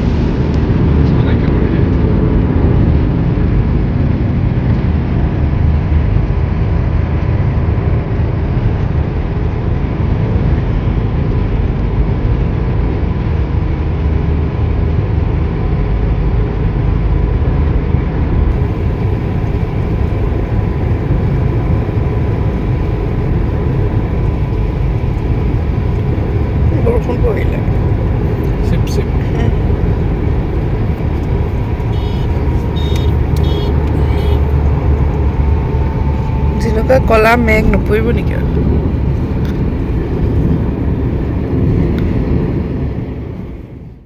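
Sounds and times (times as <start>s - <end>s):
car road and engine noise: 0.0s - 44.0s
tyre hiss: 18.6s - 36.6s.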